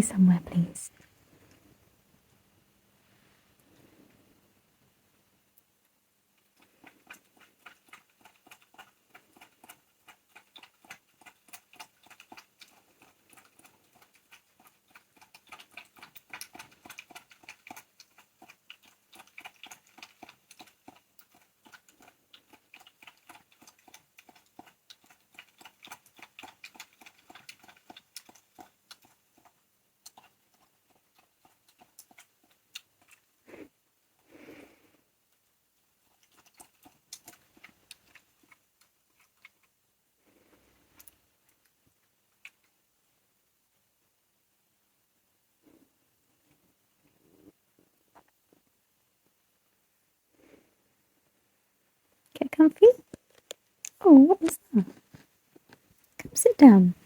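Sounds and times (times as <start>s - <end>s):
fox chewing crunchy treats: 6.4s - 42.8s.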